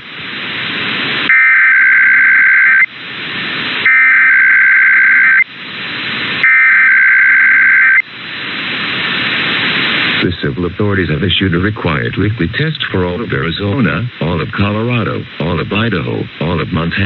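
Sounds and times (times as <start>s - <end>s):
radio static hissing: 0.0s - 17.0s
two-tone digital data bursts: 1.3s - 2.9s, 3.9s - 5.4s, 6.4s - 8.0s.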